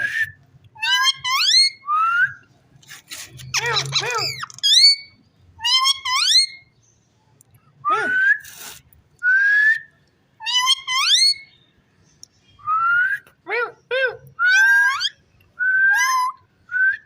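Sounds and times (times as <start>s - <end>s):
parakeet whistling rising calls: 10.5s - 11.5s.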